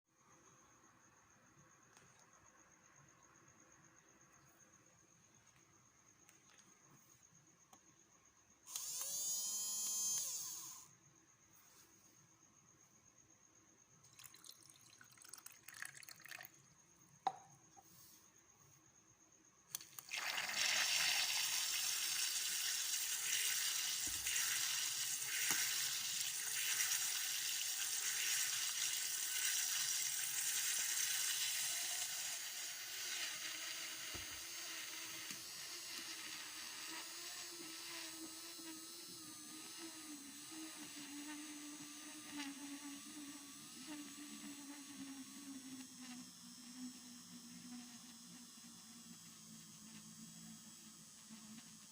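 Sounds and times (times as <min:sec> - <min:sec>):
water rushing into washing machine: 0:14.1 - 0:16.5, 0:19.8 - 0:32.6.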